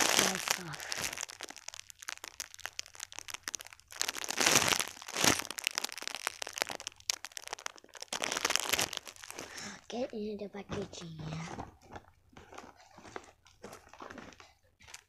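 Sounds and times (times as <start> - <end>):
plastic crinkling and crackling: 0.0 - 15.0
plastic rustling: 0.0 - 15.0.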